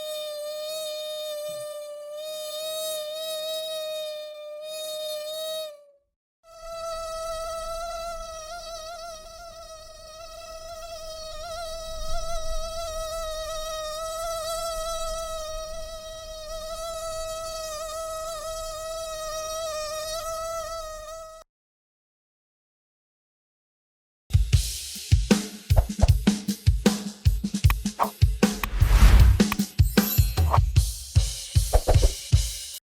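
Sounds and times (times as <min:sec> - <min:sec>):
mosquito buzzing whine: 0:00.0 - 0:21.5.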